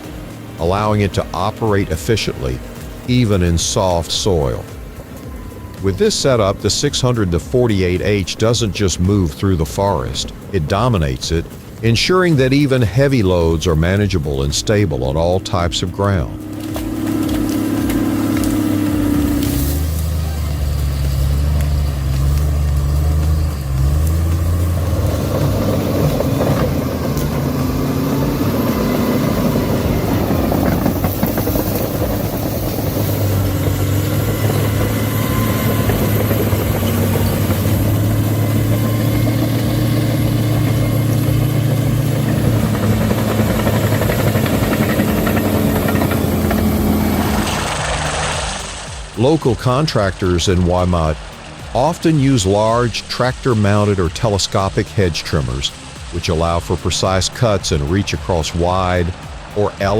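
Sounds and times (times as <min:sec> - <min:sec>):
heavy machinery engine running: 0:00.0 - 0:59.9.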